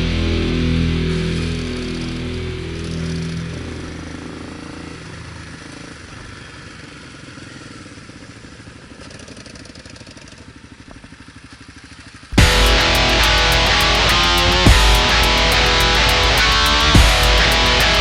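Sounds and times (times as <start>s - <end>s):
loud guitar rock music: 0.0s - 5.4s, 12.4s - 18.0s.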